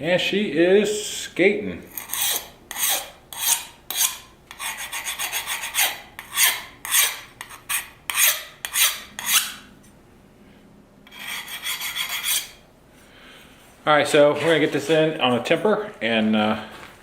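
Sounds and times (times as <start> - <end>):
file rasping on knife blade: 1.9 - 9.7, 11.1 - 12.6.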